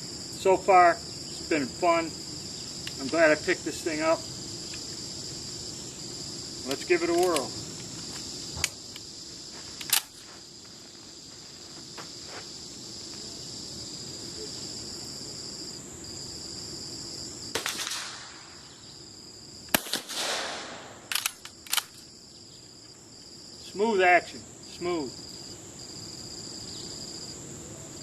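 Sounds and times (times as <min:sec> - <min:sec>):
crickets chirring: 0:00.0 - 0:28.0
rifle shots echoing: 0:17.6 - 0:18.5, 0:19.7 - 0:21.3
rifle bolt clicking: 0:21.1 - 0:22.0.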